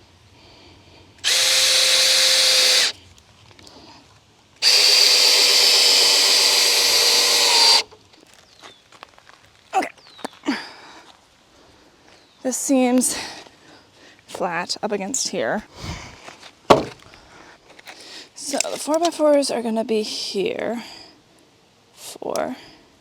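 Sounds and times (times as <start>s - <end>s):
power drill running: 1.2s - 3.0s, 4.6s - 7.9s
short knocks: 16.7s - 17.0s.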